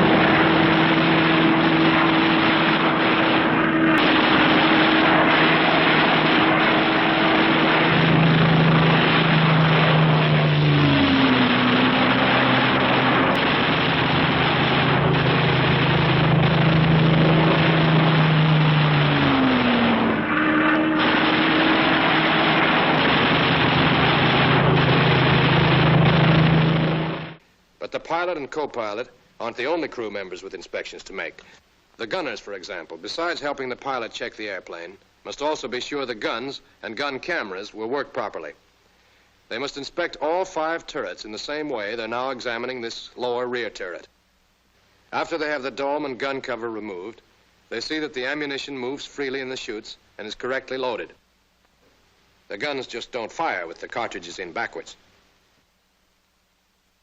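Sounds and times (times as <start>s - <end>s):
propeller aircraft engines droning: 0.0s - 27.4s.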